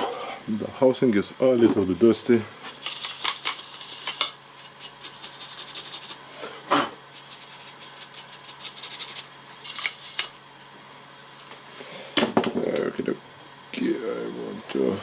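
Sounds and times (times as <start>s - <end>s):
scratchy rubbing and small clicks: 2.7s - 6.2s.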